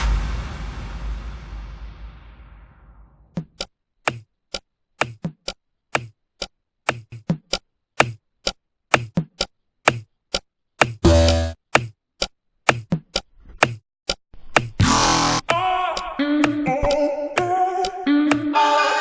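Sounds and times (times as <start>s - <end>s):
sharp dry knocks: 6.9s - 10.1s, 10.8s - 11.1s.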